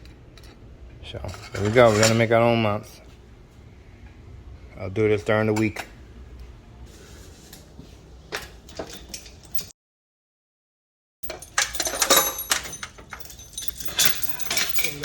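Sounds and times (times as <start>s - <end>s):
metallic clinks and clanks: 8.7s - 9.7s, 11.2s - 15.0s.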